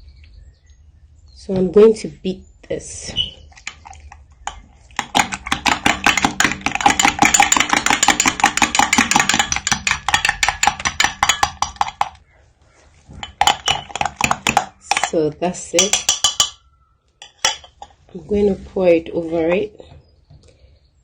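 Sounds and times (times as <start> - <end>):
utensil beating egg whites in bowl: 3.4 - 12.2, 13.2 - 16.6.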